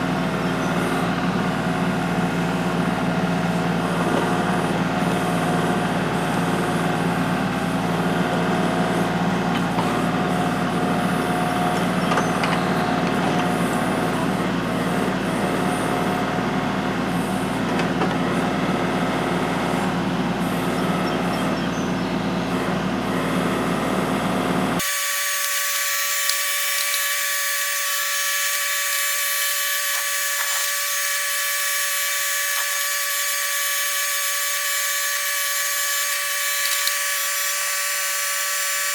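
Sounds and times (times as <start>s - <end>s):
diesel tractor engine running: 0.0s - 33.9s
thin high-pitched buzz: 24.8s - 38.9s.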